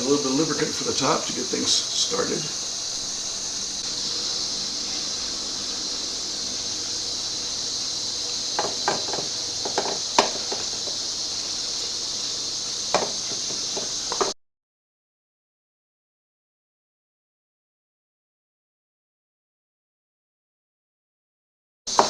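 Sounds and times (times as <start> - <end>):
steady hiss: 0.0 - 14.4.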